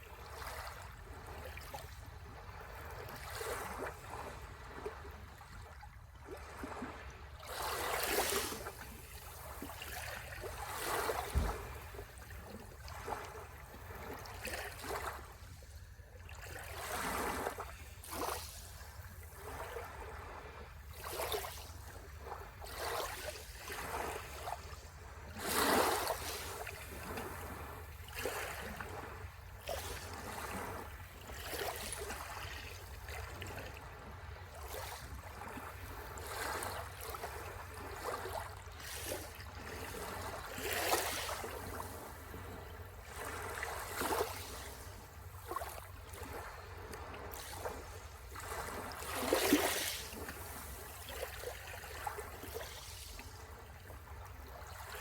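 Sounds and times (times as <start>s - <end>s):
sea waves washing ashore: 6.4s - 55.0s.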